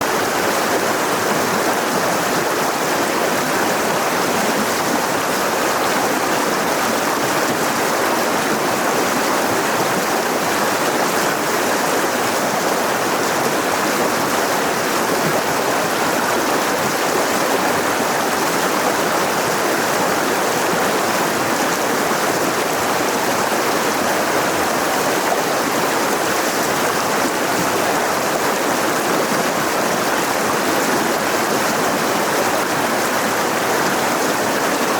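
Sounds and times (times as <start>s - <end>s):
river rushing over rocks: 0.0s - 34.9s.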